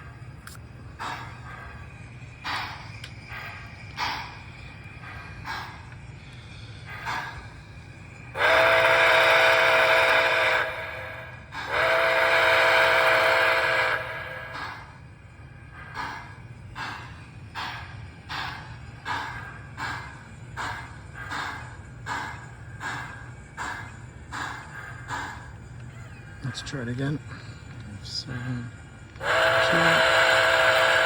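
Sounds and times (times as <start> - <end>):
steam locomotive chuffing: 0.0 - 31.0
steam whistle blasts: 8.4 - 14.9, 29.2 - 31.0.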